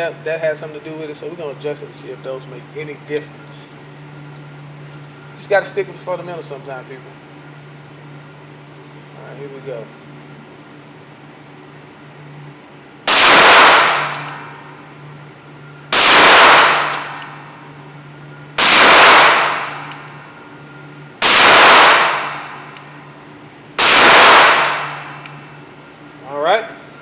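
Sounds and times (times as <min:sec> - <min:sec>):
pistol shots echoing: 0:13.1 - 0:14.4, 0:16.0 - 0:17.3, 0:18.6 - 0:20.0, 0:21.2 - 0:22.6, 0:23.8 - 0:25.2.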